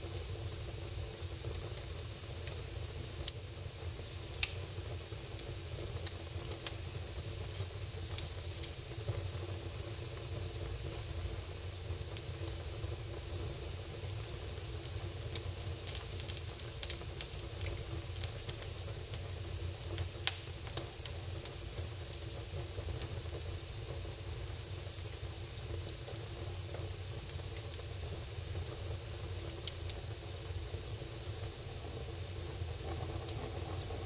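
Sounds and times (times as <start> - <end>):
fire pops: 0.0 - 34.0
wood fire crackling: 0.0 - 34.0.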